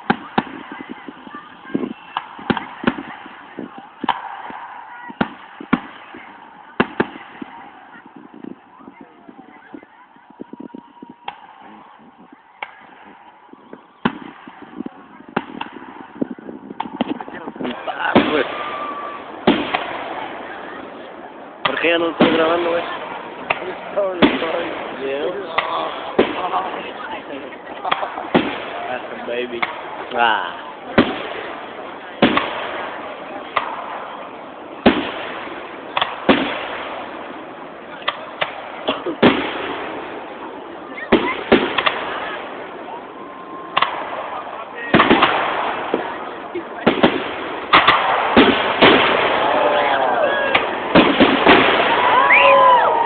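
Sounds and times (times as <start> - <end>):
fireworks banging: 0.0 - 53.0.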